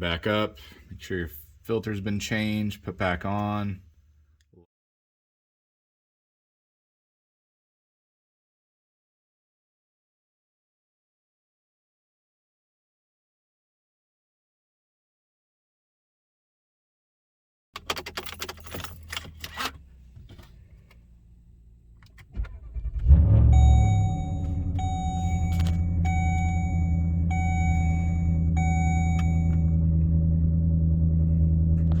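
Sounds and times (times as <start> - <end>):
keys jangling: 17.8 - 19.8
car engine cranking: 17.8 - 32.0
car engine idling: 19.8 - 32.0
warning chime beeping: 23.5 - 29.8.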